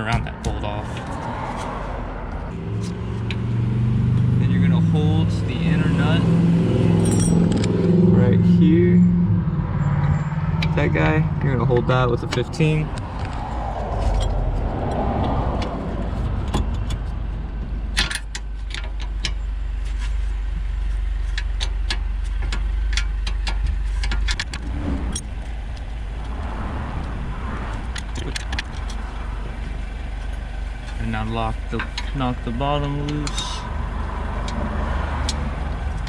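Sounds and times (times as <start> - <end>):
steady low rumble: 0.0 - 36.0
wrenches clinking on metal: 7.0 - 7.7.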